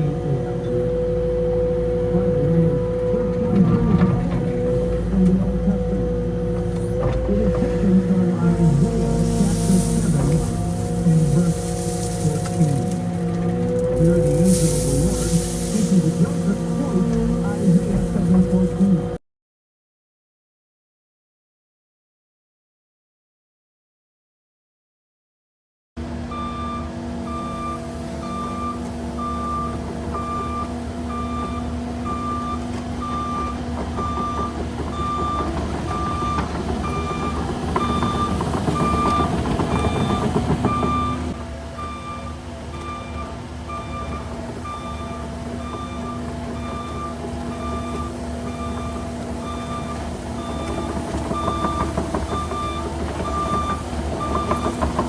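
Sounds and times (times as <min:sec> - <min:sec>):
backup alarm beeping: 0:00.0 - 0:19.2, 0:26.3 - 0:55.0
diesel engine running: 0:00.0 - 0:19.2, 0:26.0 - 0:55.0.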